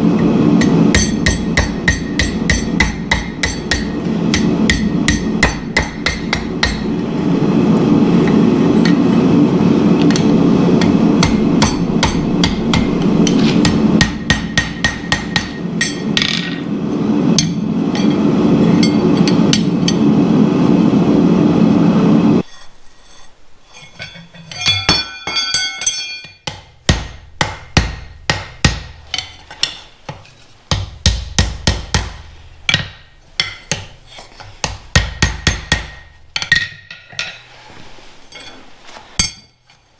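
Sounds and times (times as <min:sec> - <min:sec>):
steady low roar: 0:00.0 - 0:22.4
hammer striking steel on anvil: 0:00.2 - 0:07.0, 0:10.0 - 0:16.7, 0:17.4 - 0:20.1, 0:24.0 - 0:37.4, 0:39.2 - 0:39.7.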